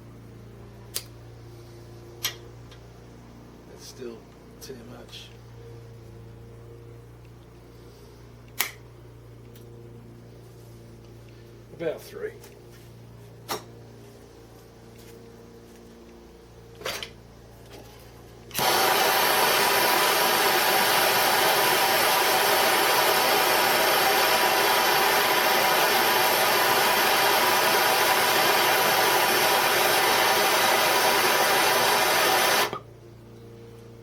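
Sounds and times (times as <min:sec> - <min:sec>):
gas torch flame hissing: 0:18.5 - 0:32.8.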